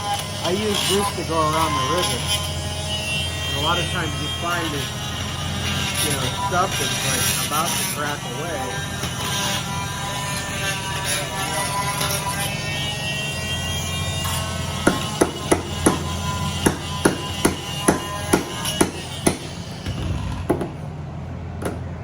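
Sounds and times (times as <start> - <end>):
steady low hum: 19.2 - 22.0.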